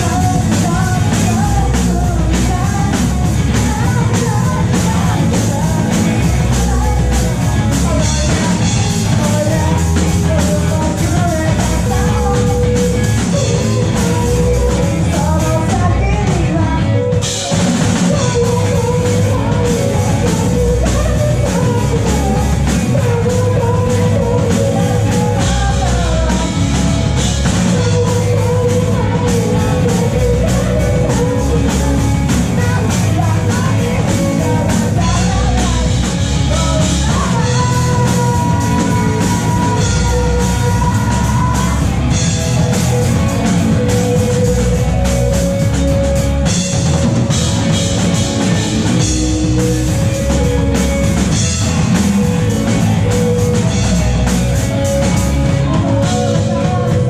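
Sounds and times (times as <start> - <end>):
person singing: 0.0 - 57.0
rock band playing live: 0.0 - 57.0.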